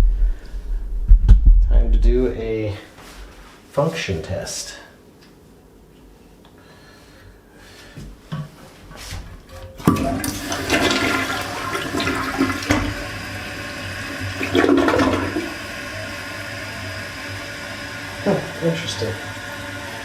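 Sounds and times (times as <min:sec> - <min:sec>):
toilet flush clicks: 0:09.8 - 0:20.0
toilet flushing water rush: 0:09.8 - 0:20.0
toilet tank refilling: 0:09.8 - 0:20.0.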